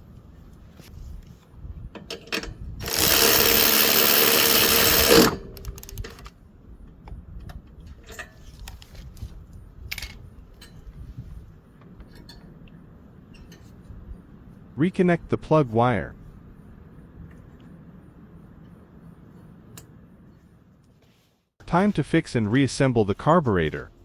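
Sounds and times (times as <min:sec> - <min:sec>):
power tool motor running: 0:02.8 - 0:05.8.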